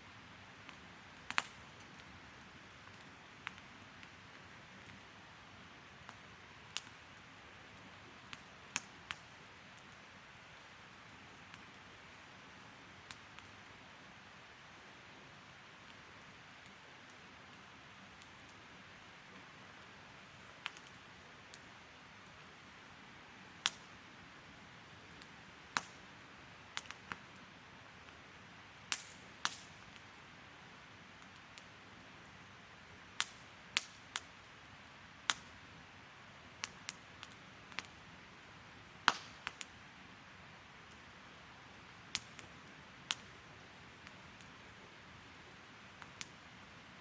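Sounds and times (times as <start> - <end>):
soft steady hiss: 0.0 - 47.0
campfire crackling and popping: 0.4 - 47.0.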